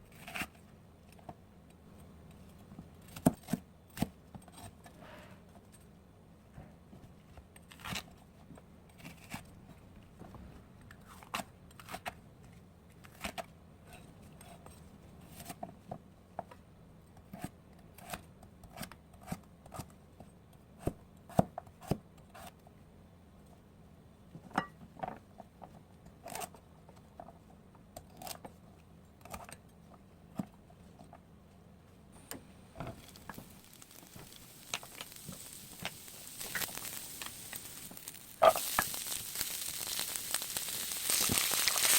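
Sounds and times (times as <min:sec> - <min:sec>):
soft hiss: 0:32.2 - 0:41.9.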